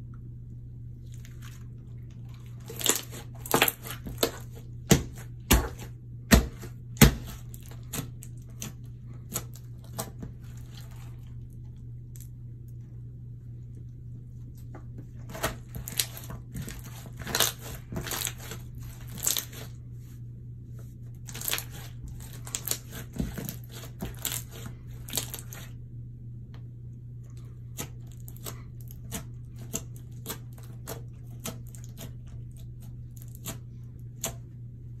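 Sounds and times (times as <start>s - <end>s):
steady low hum: 0.0s - 35.0s
slime squished by hand: 1.0s - 12.4s, 15.1s - 19.8s, 21.2s - 25.8s.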